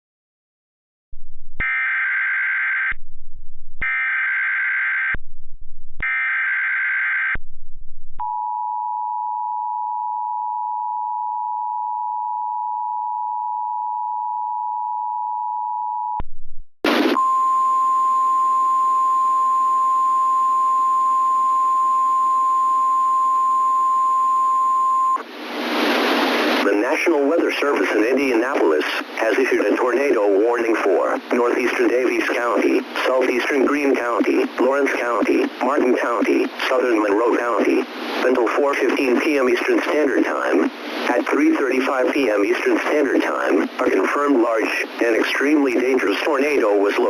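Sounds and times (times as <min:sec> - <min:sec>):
two-tone attention signal: 0:17.1 - 0:25.2
steady tone over hiss: 0:25.2 - 0:27.6.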